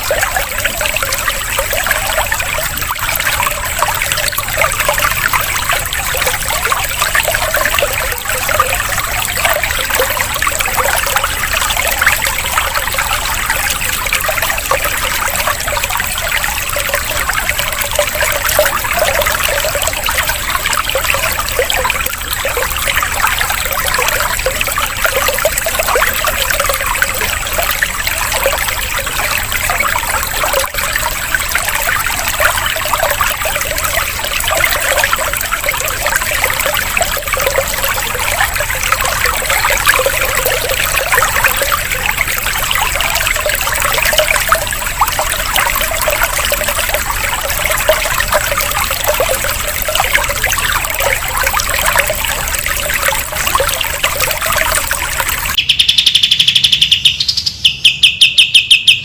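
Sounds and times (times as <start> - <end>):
trickling water: 0.0 - 59.0
thin high tone: 54.8 - 59.0
bird singing: 55.6 - 59.0.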